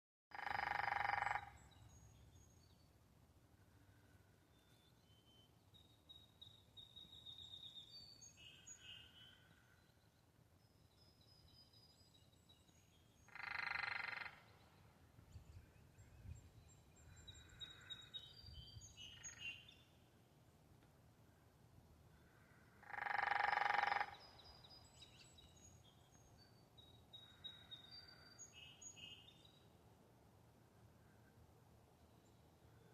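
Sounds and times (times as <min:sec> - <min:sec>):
woodpecker drumming on wood: 0:00.3 - 0:01.5, 0:22.8 - 0:24.1
faint birdsong: 0:00.3 - 0:32.9.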